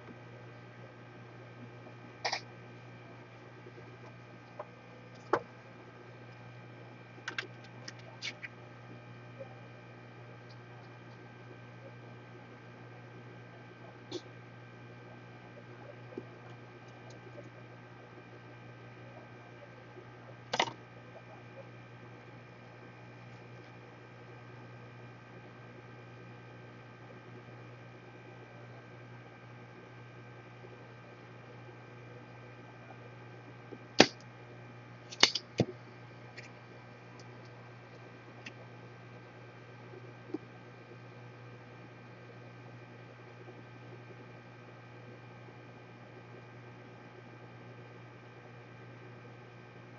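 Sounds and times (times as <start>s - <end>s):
low electrical hum: 0.0s - 49.9s
sharp clatter of clicks: 35.1s - 35.7s.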